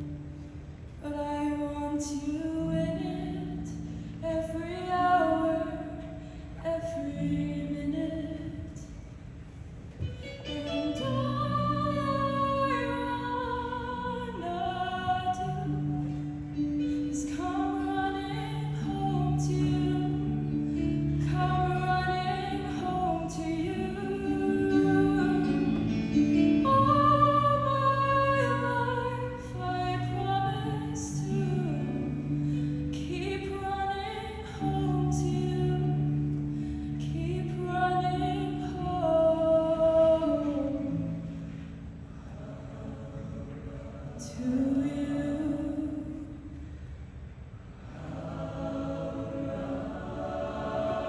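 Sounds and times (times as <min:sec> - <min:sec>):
choir singing: 0:42.2 - 0:45.4, 0:47.8 - 0:51.0.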